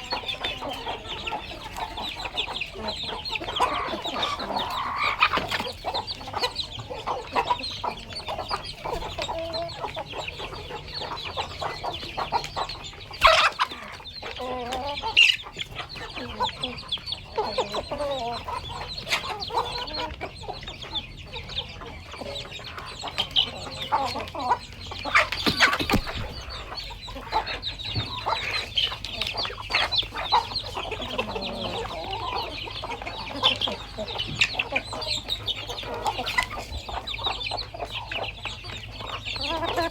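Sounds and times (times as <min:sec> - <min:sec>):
chickens clucking: 0:00.0 - 0:39.9
sharp noises: 0:25.0 - 0:27.6.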